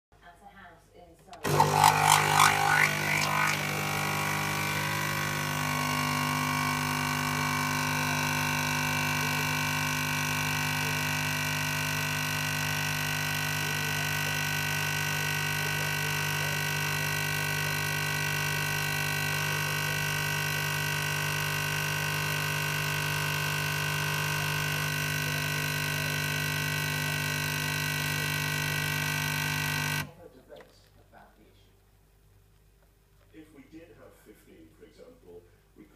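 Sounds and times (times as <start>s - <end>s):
coffee machine humming: 1.4s - 30.1s.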